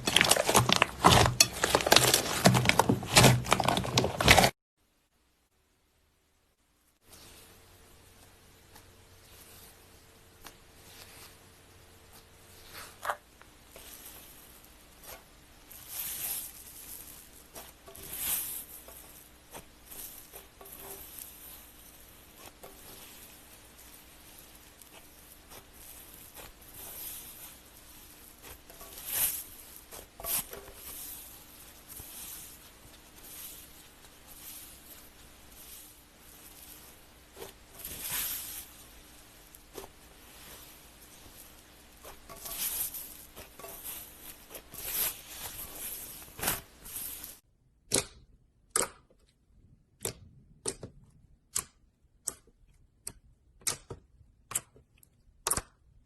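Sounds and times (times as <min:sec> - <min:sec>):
slime crackling and squelching: 0:00.0 - 0:04.6, 0:12.1 - 0:47.4.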